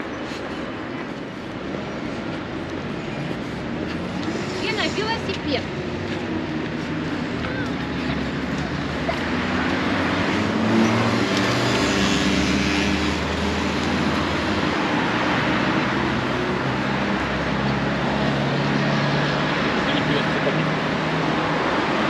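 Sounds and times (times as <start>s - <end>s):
cars passing: 0.0s - 22.0s
road noise hum: 0.0s - 22.0s.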